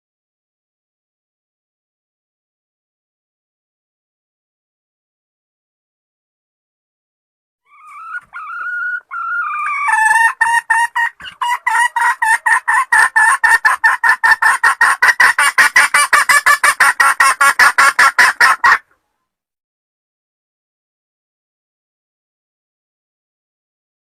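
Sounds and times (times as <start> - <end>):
hen cackling: 7.7 - 19.0.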